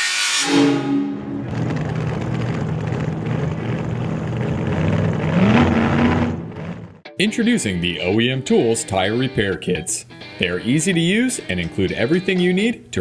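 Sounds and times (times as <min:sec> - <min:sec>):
car engine running: 0:01.1 - 0:07.1.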